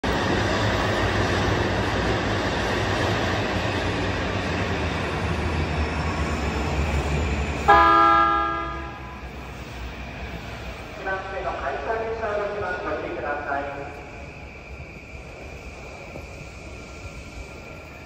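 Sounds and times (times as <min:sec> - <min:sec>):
electric train rumble: 0:00.0 - 0:18.0
train horn blast: 0:07.7 - 0:09.2.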